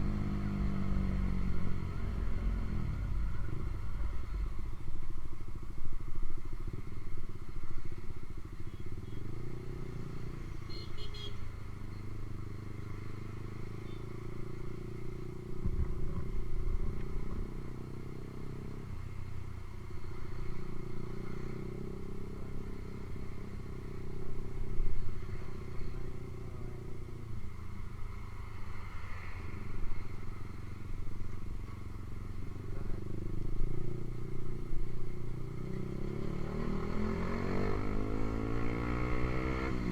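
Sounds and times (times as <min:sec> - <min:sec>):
motorcycle engine revving: 0:32.6 - 0:39.9.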